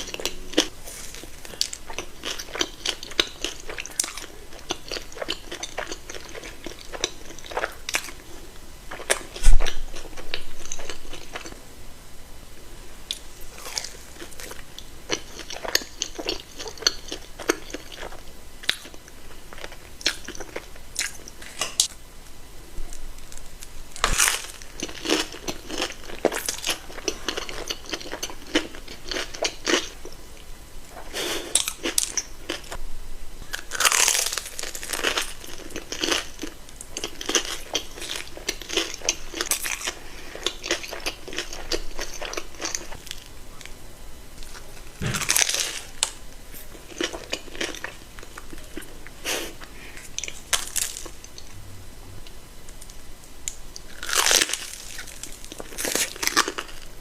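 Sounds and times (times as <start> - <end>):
chewing: 0.0 - 11.6, 13.1 - 21.9, 24.0 - 30.2, 33.5 - 43.8, 44.4 - 51.6
crunching bites: 23.2 - 30.0, 33.4 - 43.3, 44.4 - 48.9, 53.5 - 56.8.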